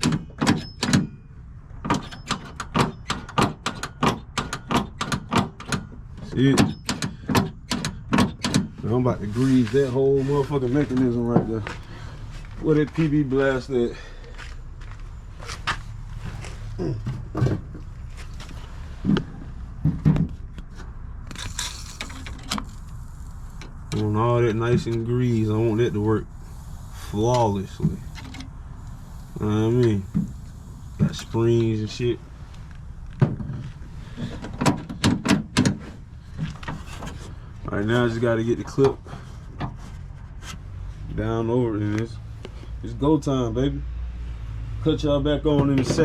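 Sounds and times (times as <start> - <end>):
car door mechanism clicking: 0.0 - 1.1, 1.8 - 8.8, 34.3 - 37.2
aerosol spray hiss: 25.3 - 32.0.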